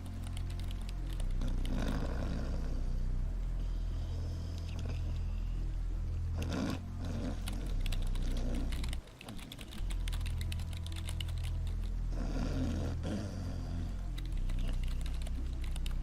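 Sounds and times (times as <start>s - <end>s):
computer keyboard typing: 0.0s - 1.8s, 7.4s - 12.0s, 14.1s - 16.0s
loud snore: 1.4s - 3.0s, 6.4s - 8.8s, 12.1s - 14.0s.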